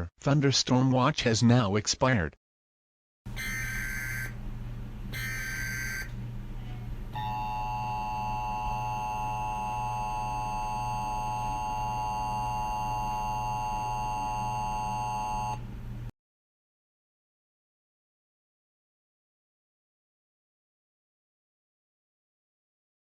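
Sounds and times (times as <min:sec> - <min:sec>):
two-tone attention signal: 0:03.3 - 0:04.4, 0:05.1 - 0:06.1, 0:07.2 - 0:15.6
low hum: 0:03.3 - 0:16.1.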